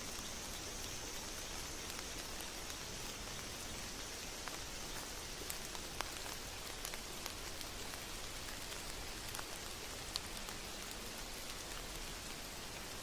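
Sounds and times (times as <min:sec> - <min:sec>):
steady rain falling: 0:00.0 - 0:13.0.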